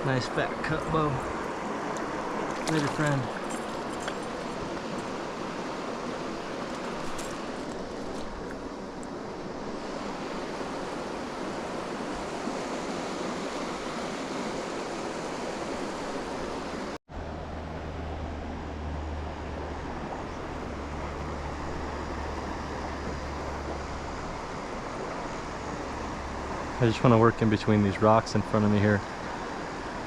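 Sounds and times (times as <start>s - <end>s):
flowing river water: 0.0s - 30.0s.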